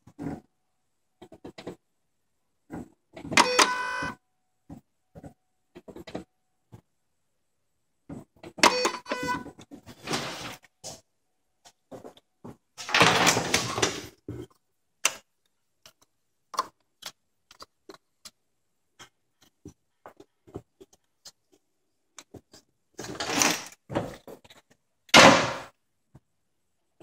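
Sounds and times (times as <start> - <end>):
rustling or scraping bursts: 9.7 - 11.0.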